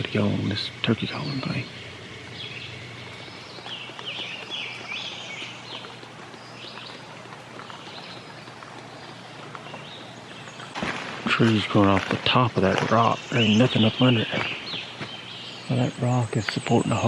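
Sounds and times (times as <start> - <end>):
faint outdoor background noise: 0.0 - 17.0
songbirds chirping: 0.0 - 17.0.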